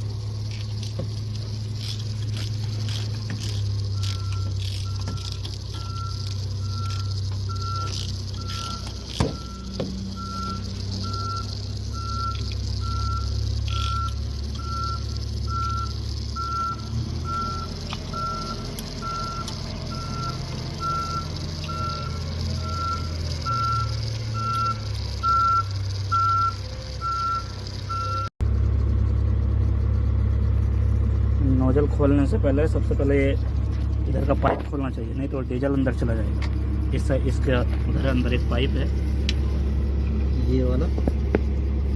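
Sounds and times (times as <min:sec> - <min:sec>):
diesel engine running: 0:00.0 - 0:41.9
electronic warning beeps: 0:03.4 - 0:28.3.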